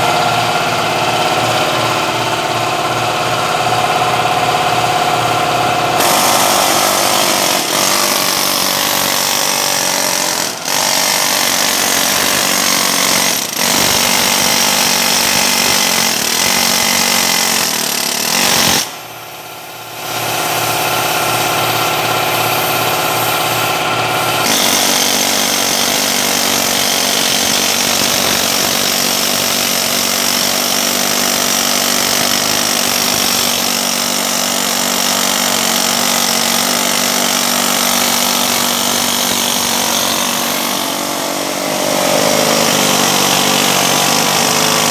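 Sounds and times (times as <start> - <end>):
loud power tool running: 0.0 - 44.9.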